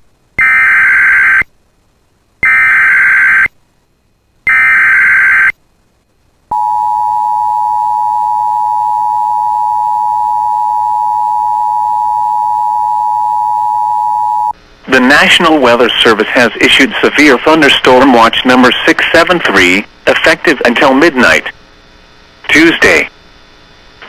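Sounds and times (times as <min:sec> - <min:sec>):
harsh digital data tones: 0:00.4 - 0:01.5, 0:02.4 - 0:03.6, 0:04.5 - 0:05.6.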